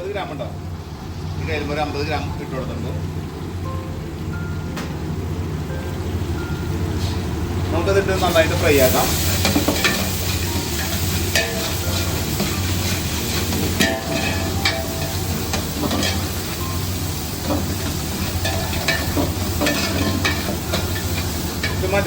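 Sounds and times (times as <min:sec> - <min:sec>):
vegetables sizzling in a pot: 0:05.0 - 0:22.0.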